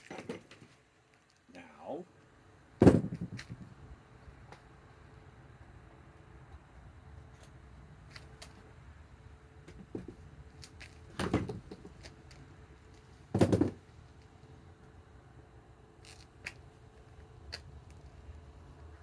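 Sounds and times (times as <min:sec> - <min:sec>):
tools clunking down: 0:00.0 - 0:00.7.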